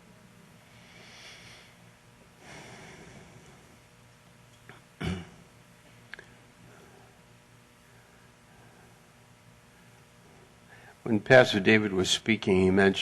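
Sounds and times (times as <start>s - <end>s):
soft breathing: 0.6s - 3.9s, 6.2s - 11.0s.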